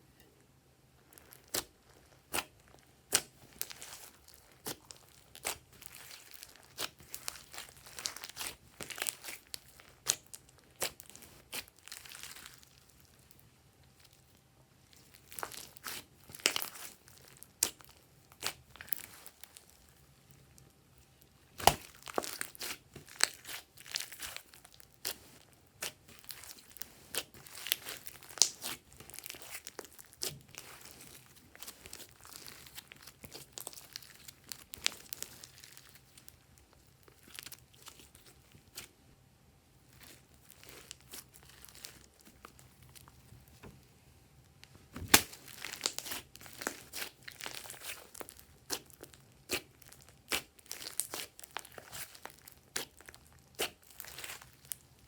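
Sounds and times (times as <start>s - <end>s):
loud slime pop: 45.0s - 45.9s.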